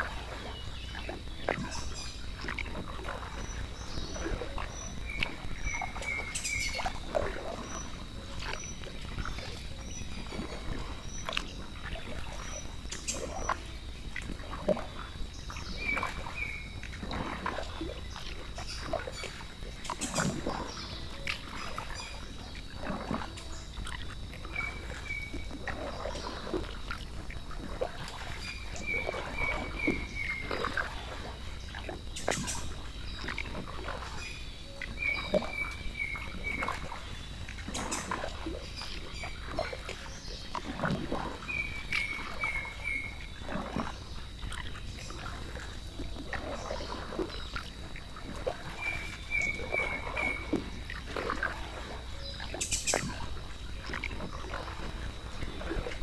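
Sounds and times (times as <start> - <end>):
high insect drone: 0.1 - 56.0.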